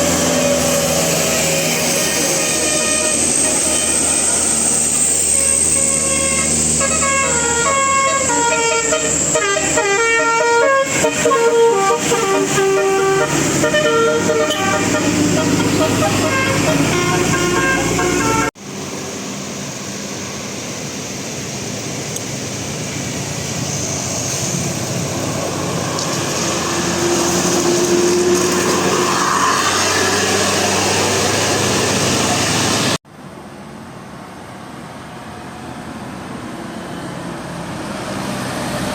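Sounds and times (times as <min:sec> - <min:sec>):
vehicle engine and road noise: 0:00.0 - 0:38.9
bus musical horn melody: 0:00.1 - 0:04.3, 0:05.4 - 0:18.6.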